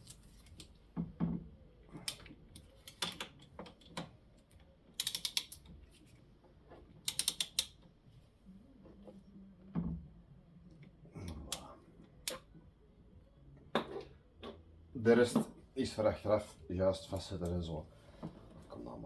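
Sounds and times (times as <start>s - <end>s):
hand ratchet clicking: 5.0s - 5.7s, 7.0s - 7.8s.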